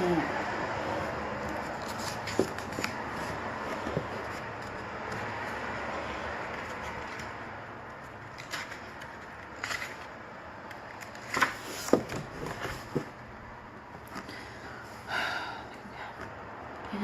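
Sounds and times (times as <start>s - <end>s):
handling clicks and rustles: 1.4s - 5.6s.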